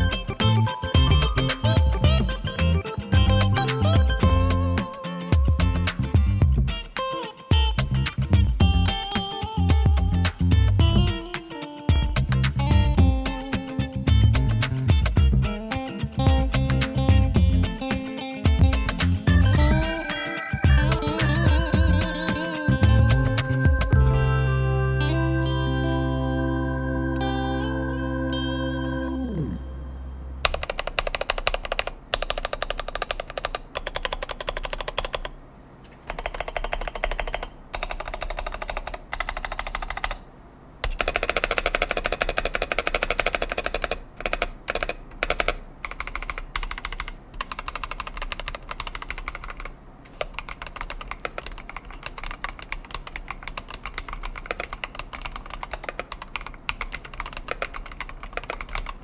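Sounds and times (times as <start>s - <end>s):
mechanical keyboard typing: 19.9s - 21.5s, 30.4s - 35.4s, 36.0s - 40.2s, 40.8s - 59.0s.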